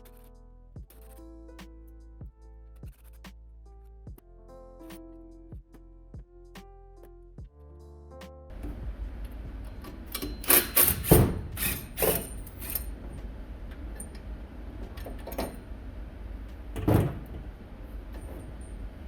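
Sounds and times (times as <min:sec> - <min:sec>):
steady low hum: 0:08.5 - 0:19.0
metal clanks of tools on engine: 0:09.6 - 0:13.2, 0:14.8 - 0:15.7.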